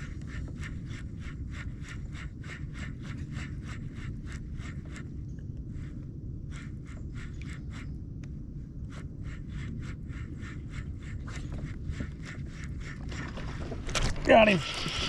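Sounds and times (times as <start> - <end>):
low wind rumble: 0.0 - 15.0
fishing reel clicking: 13.9 - 15.0.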